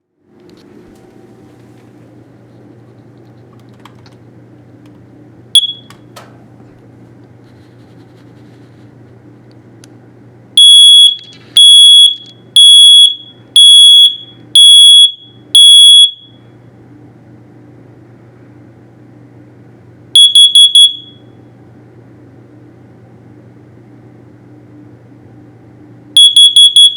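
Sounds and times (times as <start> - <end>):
steady low hum: 0.0 - 26.9
alarm chirp: 5.6 - 5.9, 10.6 - 16.4, 20.2 - 21.2, 26.2 - 26.9
high-pitched alarm beeps: 5.6 - 5.9, 10.6 - 16.4, 20.2 - 21.2, 26.2 - 26.9.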